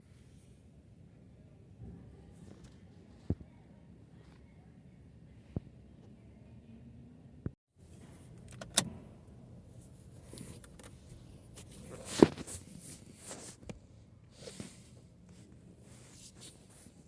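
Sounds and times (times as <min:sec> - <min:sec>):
rustling of handled objects: 0:09.7 - 0:17.0.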